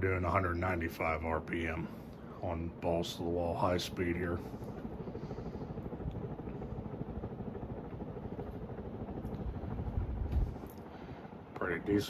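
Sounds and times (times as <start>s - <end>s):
ceiling fan whooshing: 0.0s - 12.0s.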